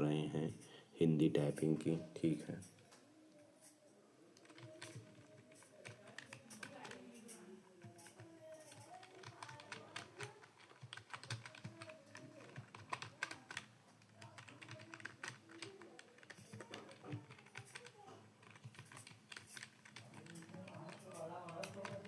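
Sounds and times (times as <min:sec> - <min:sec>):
keyboard typing clicks: 0:04.4 - 0:22.0.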